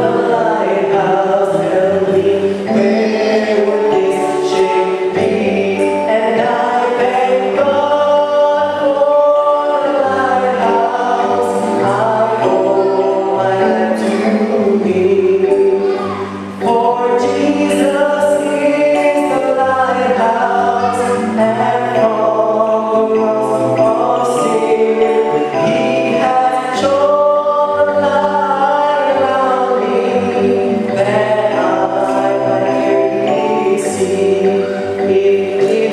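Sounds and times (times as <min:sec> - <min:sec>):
choir singing a hymn: 0:00.0 - 0:35.9.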